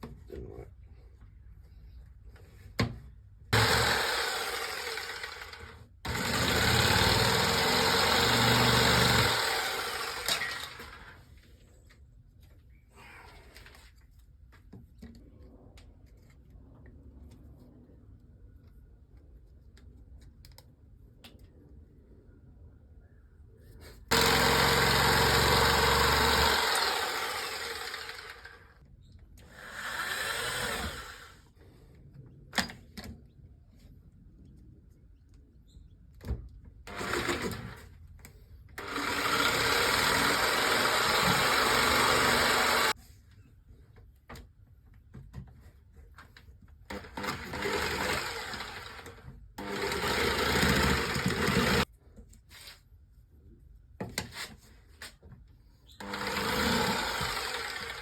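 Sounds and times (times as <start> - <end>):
electric jigsaw cutting: 3.6 - 11.2, 24.1 - 28.8, 29.6 - 31.5, 36.9 - 37.9, 38.8 - 43.0, 46.9 - 51.9, 56.0 - 58.0.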